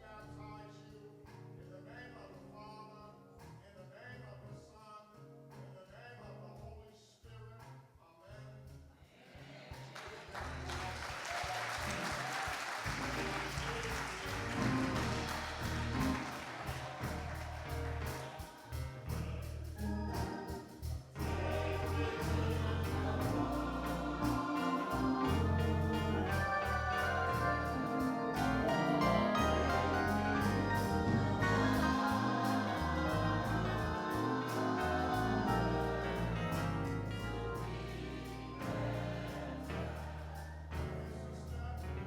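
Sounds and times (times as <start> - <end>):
gospel singing: 9.0 - 42.0
organ accompaniment: 10.4 - 42.0
steady bass line: 12.9 - 41.7.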